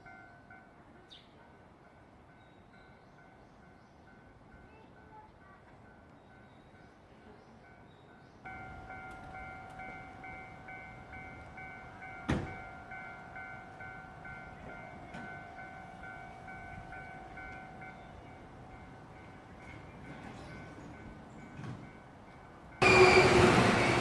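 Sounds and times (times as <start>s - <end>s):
level crossing alarm dinging: 22.8s - 24.0s.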